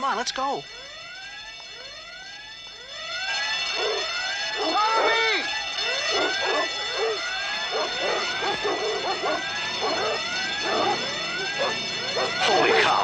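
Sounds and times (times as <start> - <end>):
high-pitched alarm tone: 0.0 - 13.0
dogs barking and yelping: 3.2 - 13.0.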